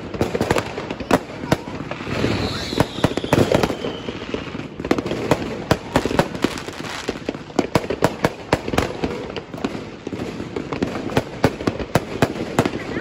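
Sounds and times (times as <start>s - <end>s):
fireworks bangs and cracks: 0.0s - 13.0s
falling firework whistle: 1.6s - 4.7s.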